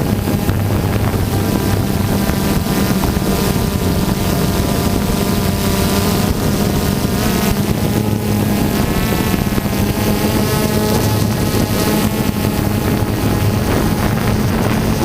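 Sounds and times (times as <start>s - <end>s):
drone propellers buzzing: 0.0s - 15.0s
wind on microphone: 0.0s - 15.0s.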